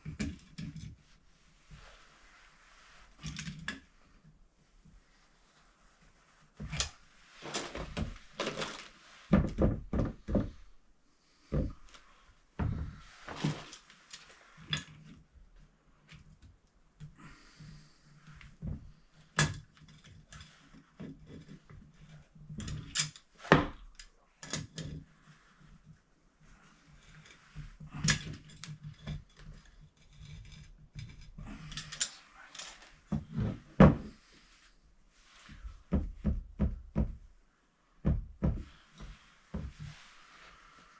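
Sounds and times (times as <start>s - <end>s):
knocks and thuds of tools: 9.3s - 10.6s, 33.1s - 34.2s.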